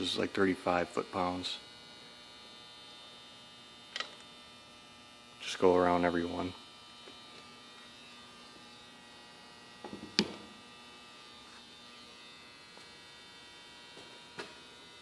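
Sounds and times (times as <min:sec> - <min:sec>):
electrical hum: 0:00.0 - 0:15.0.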